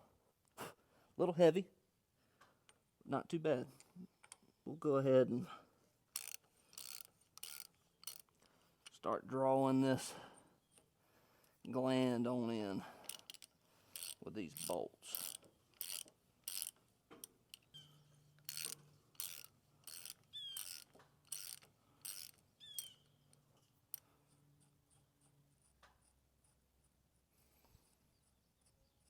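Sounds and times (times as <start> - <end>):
socket ratchet clicking: 6.1 - 8.4, 13.0 - 23.4.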